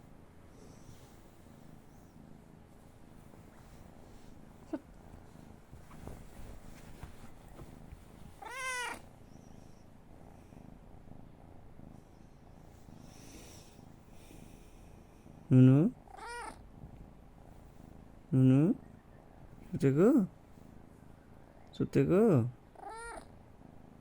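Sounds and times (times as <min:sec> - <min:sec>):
cat purring: 0:00.0 - 0:24.0
cat meowing: 0:08.4 - 0:09.0, 0:16.1 - 0:16.6, 0:22.8 - 0:23.3.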